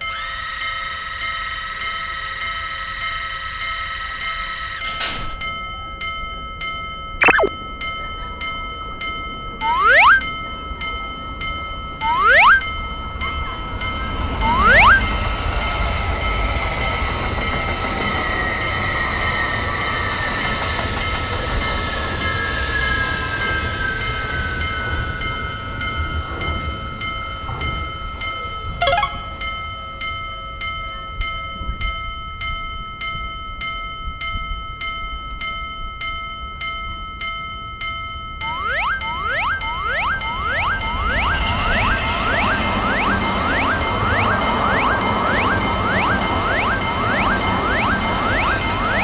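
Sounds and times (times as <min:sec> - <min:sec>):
short rising whistle: 0:07.2 - 0:07.5, 0:09.6 - 0:10.3, 0:12.0 - 0:12.7, 0:14.4 - 0:15.2
tone falling in pitch: 0:07.2 - 0:07.5, 0:09.6 - 0:10.3, 0:12.0 - 0:12.7, 0:14.4 - 0:15.1, 0:28.8 - 0:29.6, 0:38.4 - 0:49.0
railroad crossing bell ringing: 0:24.0 - 0:30.8, 0:36.6 - 0:49.0.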